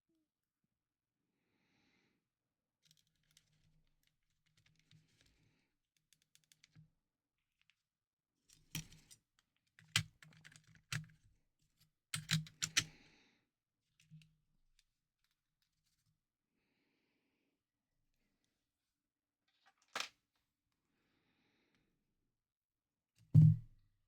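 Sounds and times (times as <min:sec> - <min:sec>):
plastic parts clicking: 0:12.2 - 0:12.9.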